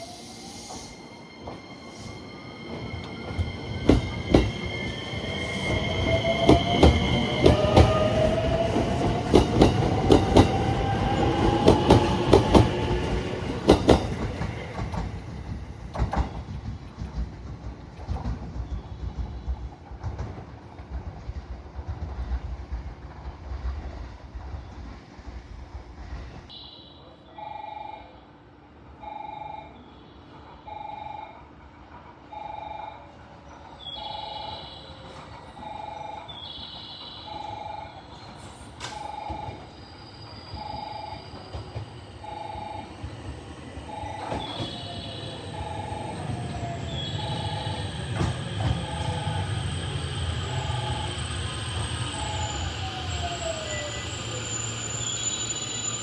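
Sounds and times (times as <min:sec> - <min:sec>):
railway warning chime: 0:00.0 - 0:16.4, 0:32.2 - 0:56.0
train wheel squeal: 0:00.0 - 0:16.8, 0:32.3 - 0:56.0
train running noise: 0:00.0 - 0:26.5, 0:31.4 - 0:56.0.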